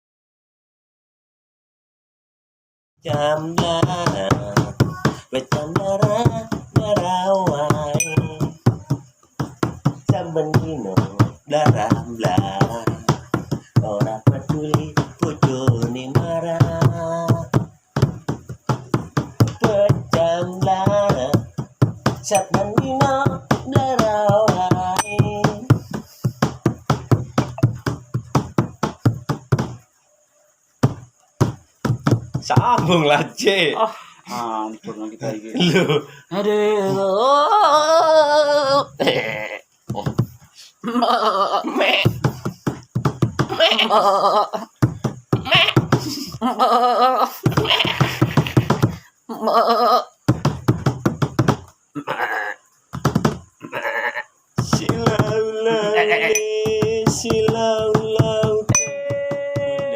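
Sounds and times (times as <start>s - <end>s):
sharp rhythmic knocks: 3.0s - 33.6s, 39.7s - 40.5s, 42.0s - 43.9s, 44.6s - 46.4s, 47.4s - 49.2s, 50.2s - 52.0s, 52.6s - 53.6s, 54.4s - 59.9s
wavering bleats: 40.8s - 42.2s, 43.5s - 44.4s, 45.4s - 45.8s, 47.6s - 50.1s, 51.9s - 52.6s, 53.6s - 54.4s, 55.7s - 56.4s.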